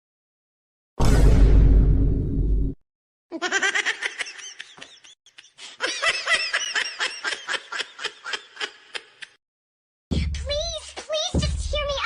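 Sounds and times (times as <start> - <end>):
high-pitched giggling: 3.3 - 9.4.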